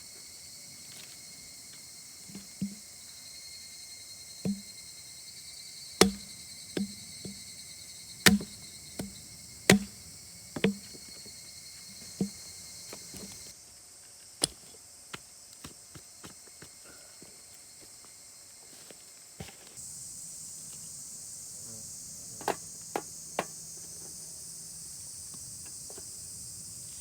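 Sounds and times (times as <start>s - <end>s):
insects chirring: 0.0s - 27.0s
wood being chopped: 4.4s - 4.7s, 6.0s - 11.2s, 12.0s - 13.5s.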